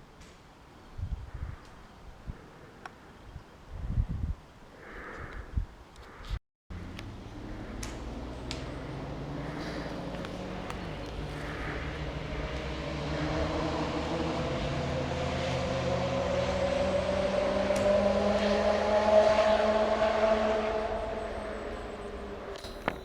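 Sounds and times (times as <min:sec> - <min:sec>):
motor engine rising in pitch: 0:06.7 - 0:23.0.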